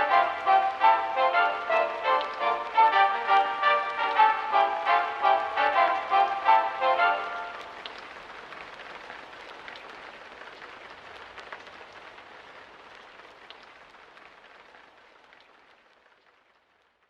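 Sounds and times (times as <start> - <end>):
rain falling steadily: 0.0 - 17.0
raindrops ticking: 0.0 - 17.0.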